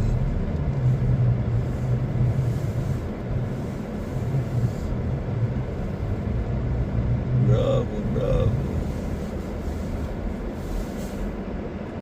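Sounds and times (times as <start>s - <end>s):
car engine and road noise drone: 0.0s - 12.0s.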